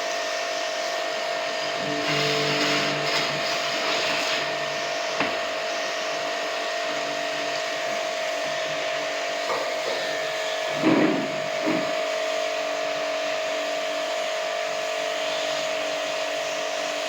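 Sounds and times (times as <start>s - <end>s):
low hum: 1.6s - 8.8s
small electric motor running: 1.6s - 10.8s.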